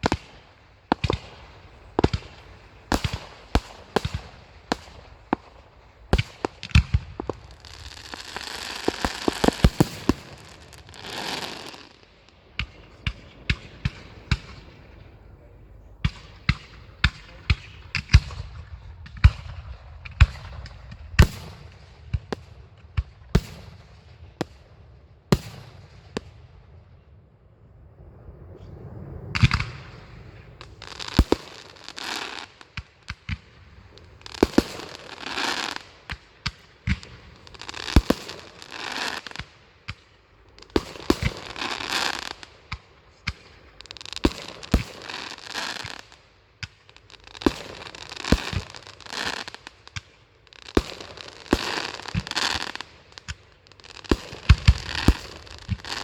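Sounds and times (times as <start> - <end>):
fireworks hissing: 0.0 - 12.0, 29.4 - 32.7, 33.5 - 46.2, 46.9 - 56.0.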